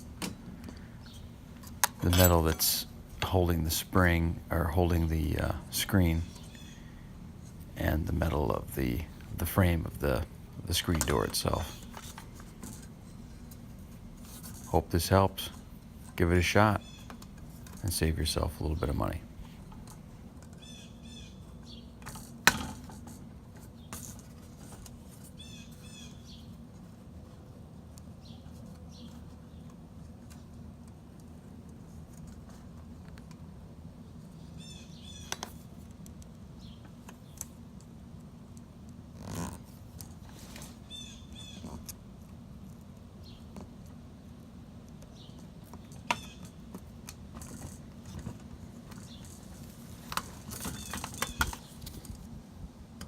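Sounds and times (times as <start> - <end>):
steady low hum: 0.0 - 53.0
small birds chirping: 0.6 - 1.5, 5.9 - 7.1, 16.6 - 19.2, 20.5 - 22.0, 25.3 - 26.7, 28.0 - 29.8, 34.0 - 35.5, 36.5 - 37.4, 40.8 - 41.9, 43.2 - 43.6, 44.9 - 46.7, 48.9 - 52.1
bird chirps: 6.2 - 7.0.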